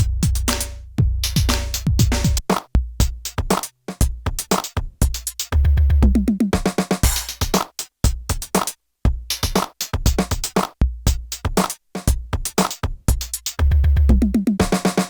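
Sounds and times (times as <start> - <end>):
hi-hats: 0.0 - 5.8, 6.6 - 13.9
kick drum thuds: 0.0 - 7.2, 9.1 - 11.3.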